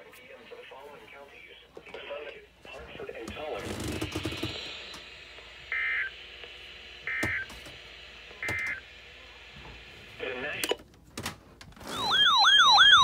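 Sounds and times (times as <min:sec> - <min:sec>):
two-tone data bursts: 0:05.7 - 0:06.2.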